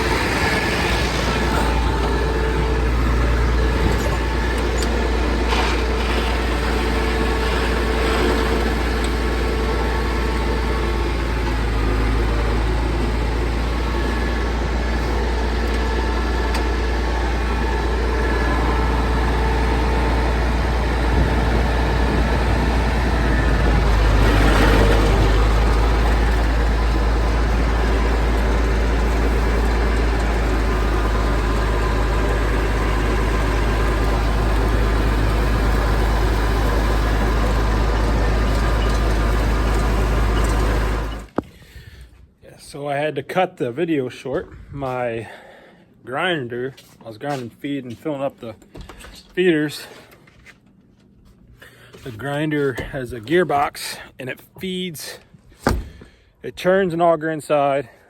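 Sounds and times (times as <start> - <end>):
tractor engine running: 0.0 - 41.7.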